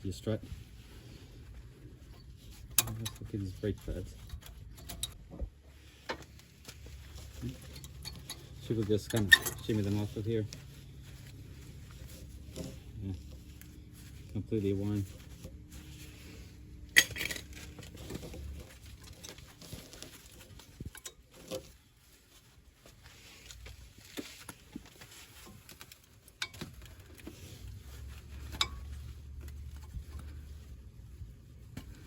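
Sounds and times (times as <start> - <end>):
metallic clicks and scrapes: 2.0 - 5.4, 6.0 - 10.7, 15.1 - 21.9, 23.4 - 30.8.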